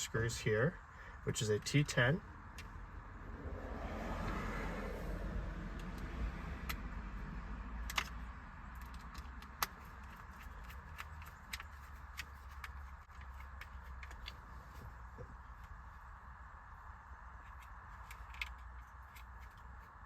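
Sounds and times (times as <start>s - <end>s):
low steady hum: 0.0s - 20.0s
screwdriver and plastic parts clicking: 7.8s - 14.9s, 17.3s - 20.0s.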